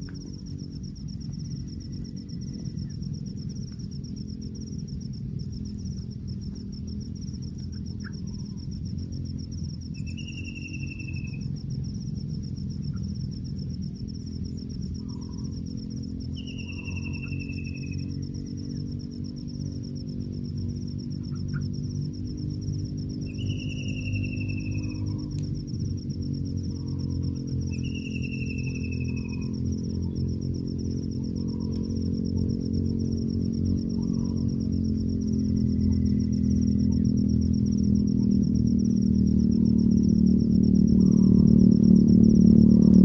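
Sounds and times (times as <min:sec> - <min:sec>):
insect trilling: 0:00.0 - 0:43.0
bird whistling: 0:10.0 - 0:11.4, 0:16.4 - 0:18.0, 0:23.3 - 0:24.9, 0:27.7 - 0:29.5.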